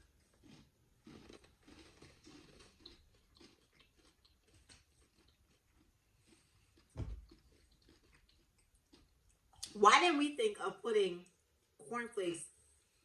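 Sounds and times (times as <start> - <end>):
chewing and crunching chocolate: 0.0 - 9.8
dull thump: 7.0 - 7.2.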